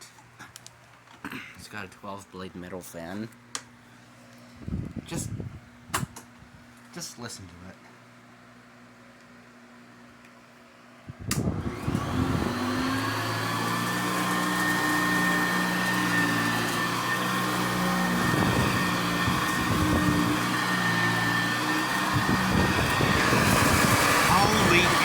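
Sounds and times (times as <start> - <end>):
vacuum cleaner switch click: 11.3 - 12.1
vacuum cleaner motor whining: 11.3 - 25.0.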